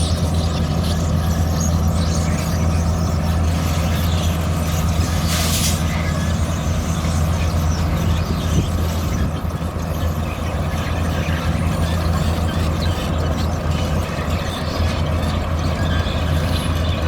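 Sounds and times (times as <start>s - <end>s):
heavy diesel engine running: 0.0s - 17.0s
short hiss: 5.3s - 5.8s.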